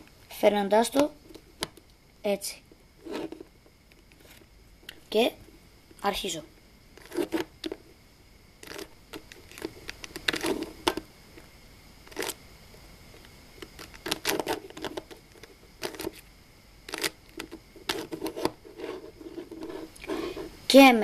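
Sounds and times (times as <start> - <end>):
puzzle cube plastic clicks: 8.6 - 11.0, 13.7 - 16.2, 16.9 - 18.6.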